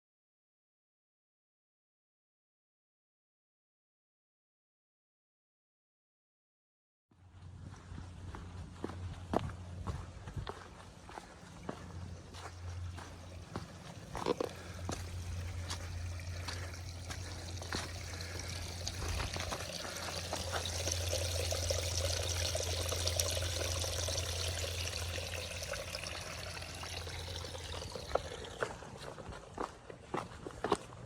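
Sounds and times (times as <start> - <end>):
trickling stream: 9.8 - 30.9.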